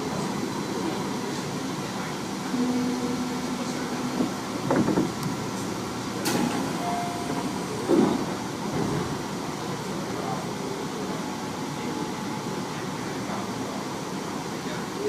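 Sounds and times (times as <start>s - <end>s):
train carriage background noise: 0.0s - 15.0s
train steady low hum: 0.0s - 15.0s
short higher tone: 6.8s - 7.8s.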